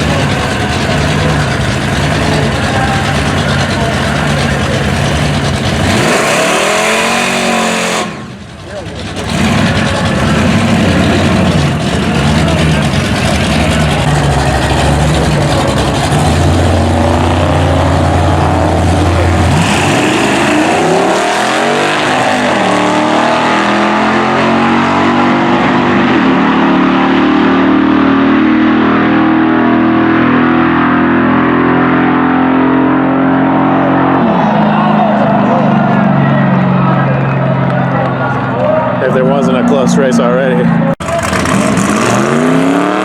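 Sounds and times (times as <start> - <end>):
drag racing car engines accelerating: 0.0 - 43.0.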